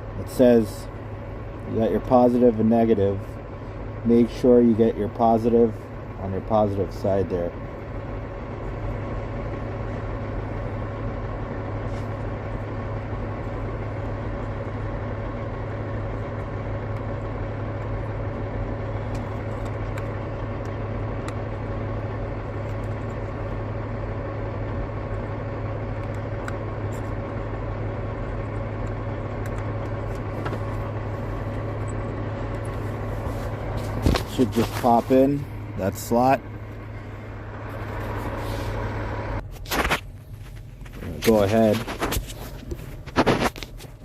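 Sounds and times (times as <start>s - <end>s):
engine idling: 0.0s - 44.0s.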